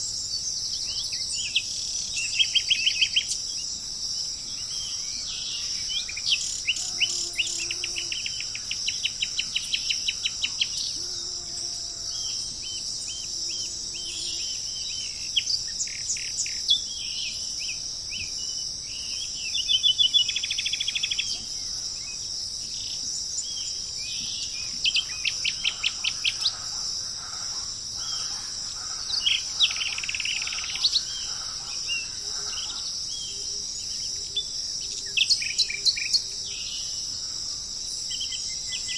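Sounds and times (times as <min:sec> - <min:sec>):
high-pitched insect drone: 0:00.0 - 0:38.9
birds chirping and calling: 0:12.1 - 0:36.9
bird trill: 0:23.4 - 0:34.4.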